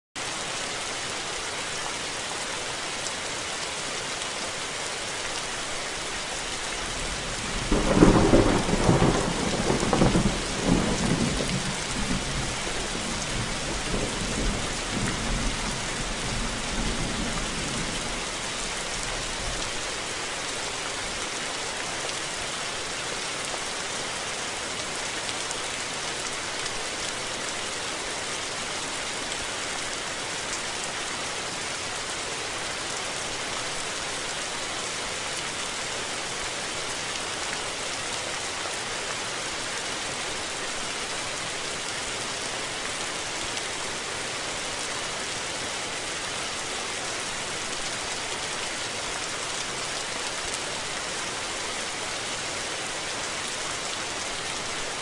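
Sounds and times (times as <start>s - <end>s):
steady rain falling: 0.2s - 55.0s
thunderclap rumbling: 7.6s - 13.1s.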